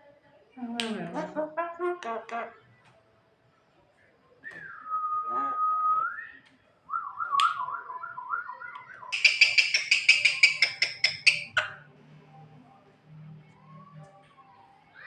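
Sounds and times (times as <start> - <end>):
bird harsh sharp notes: 9.0 - 11.8.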